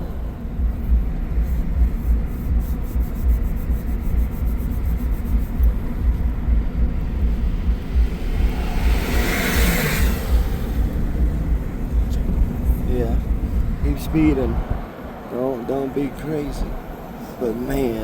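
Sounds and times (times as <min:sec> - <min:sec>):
road and engine rumble in cabin: 0:00.0 - 0:18.0.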